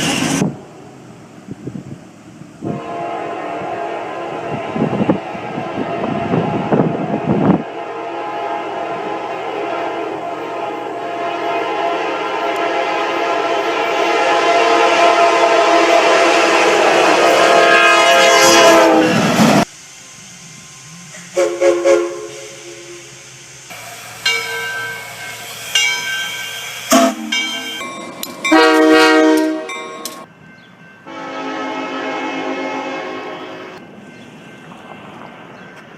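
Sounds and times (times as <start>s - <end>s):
short locomotive horn blasts: 2.6s - 19.3s, 21.3s - 23.1s, 28.5s - 29.9s, 31.1s - 33.8s
locomotive air horn blast: 2.6s - 19.7s, 21.2s - 23.9s, 26.8s - 27.8s, 28.5s - 29.8s, 31.1s - 33.8s.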